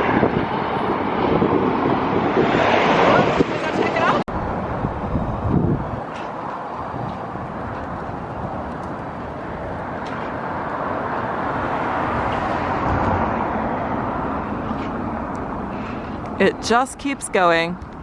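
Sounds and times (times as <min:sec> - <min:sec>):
vehicle passing: 0:06.8 - 0:17.3.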